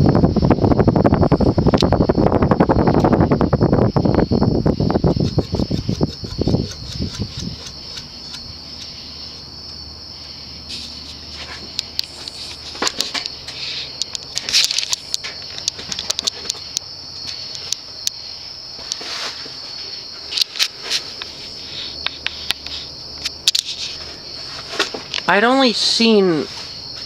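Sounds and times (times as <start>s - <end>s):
gusty air noise on microphone: 0.0s - 25.2s
low steady fan hum: 0.0s - 27.0s.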